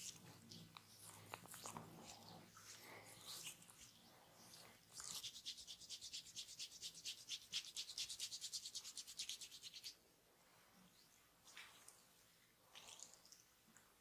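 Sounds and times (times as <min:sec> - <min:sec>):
hands rubbing in massage: 0:01.0 - 0:10.0.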